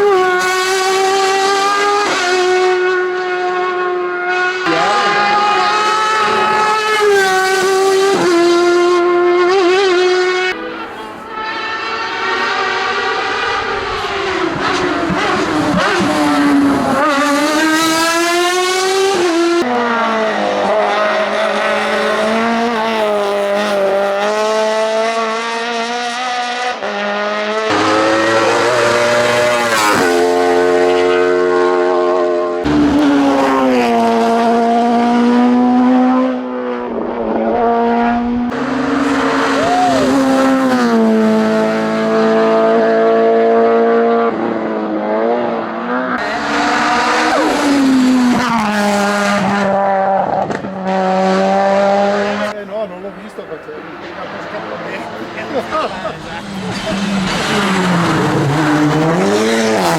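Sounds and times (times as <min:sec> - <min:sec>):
race car engines revving: 0:00.0 - 0:59.9.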